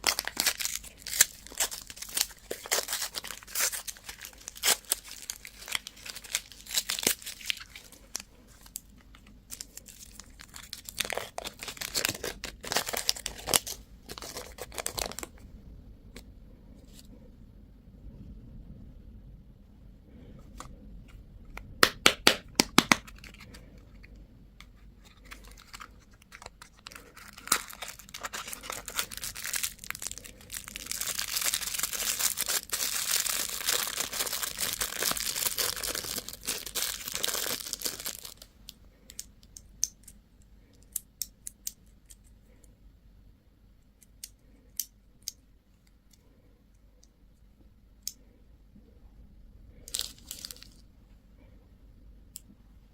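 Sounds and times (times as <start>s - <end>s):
wrapper tearing: 0.0s - 8.9s, 9.5s - 15.3s, 25.0s - 38.5s, 49.9s - 50.8s
wrapper crinkling: 0.0s - 15.3s, 25.0s - 38.5s, 49.9s - 50.8s.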